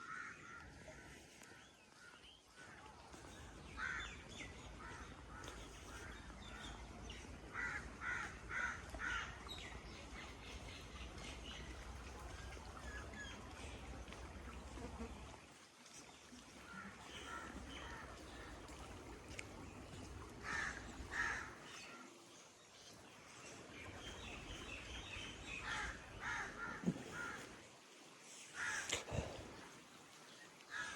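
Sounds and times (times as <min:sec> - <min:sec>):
birds calling: 0:17.0 - 0:22.0.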